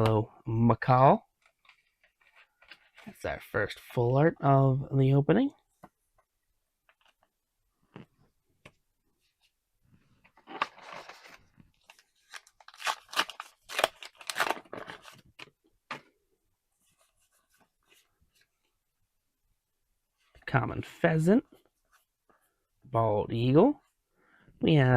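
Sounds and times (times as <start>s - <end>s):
foil wrapper tearing and crinkling: 10.5s - 15.2s.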